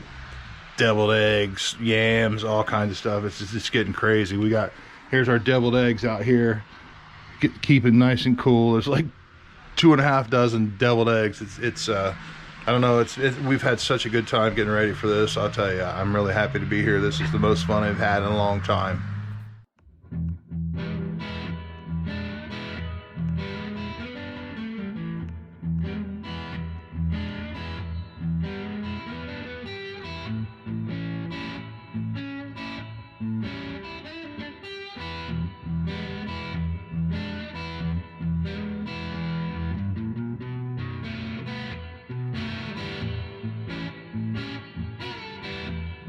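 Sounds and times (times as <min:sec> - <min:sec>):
distorted electric guitar: 0:00.0 - 0:46.0
bass line: 0:07.4 - 0:29.4, 0:35.0 - 0:46.0.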